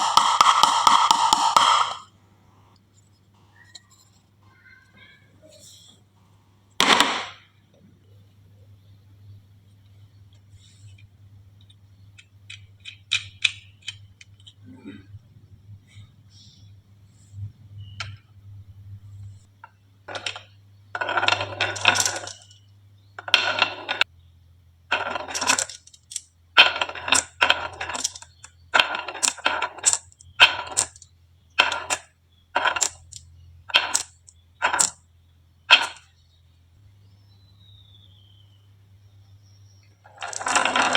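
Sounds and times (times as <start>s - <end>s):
marbles clacking down wooden run: 0.0s - 2.1s, 20.1s - 22.6s, 23.2s - 24.1s, 24.9s - 35.0s, 35.7s - 36.1s, 40.0s - 40.9s.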